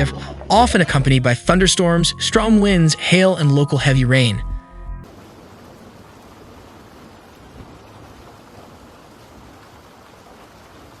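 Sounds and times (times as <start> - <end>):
heavy rain falling: 5.0 - 11.0.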